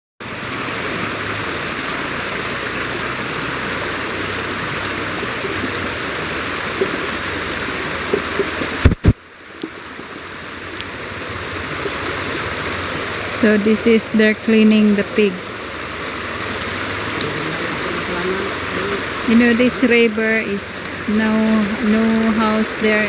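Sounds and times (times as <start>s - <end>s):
river water rushing over rocks: 0.2s - 23.0s.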